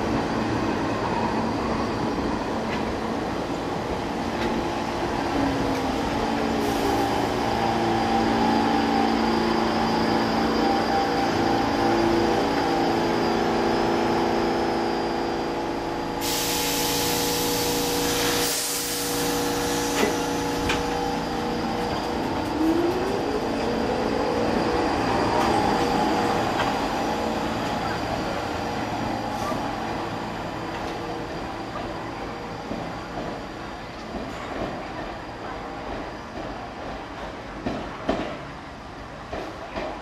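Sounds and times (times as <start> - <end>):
subway train equipment humming: 0.0 - 40.0
train motor whine: 5.7 - 31.1
loud air hiss: 16.0 - 21.4.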